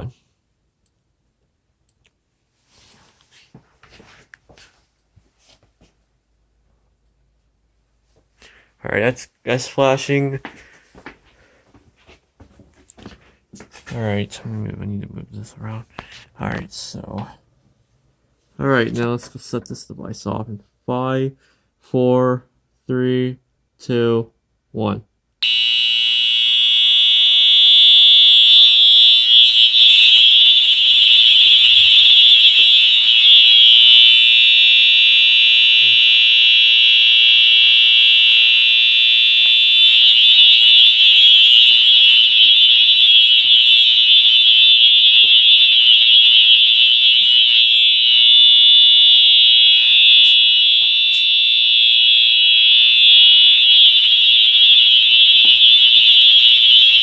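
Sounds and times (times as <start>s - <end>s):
fire alarm horn tone: 25.4s - 57.0s.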